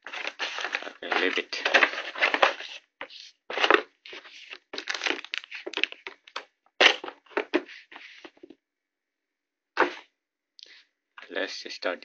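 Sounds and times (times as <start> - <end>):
packaging crinkling: 0.0 - 7.5.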